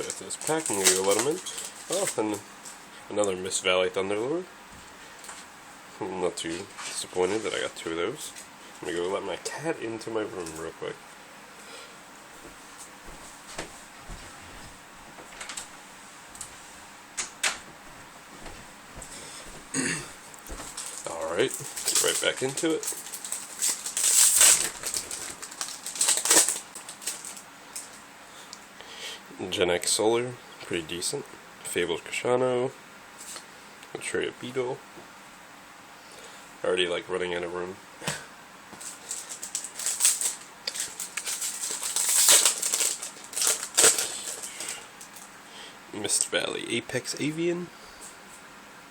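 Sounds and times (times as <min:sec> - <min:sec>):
cards and foil wrappers rustling: 0:00.0 - 0:02.8, 0:15.3 - 0:15.7, 0:20.3 - 0:28.0, 0:38.7 - 0:45.3.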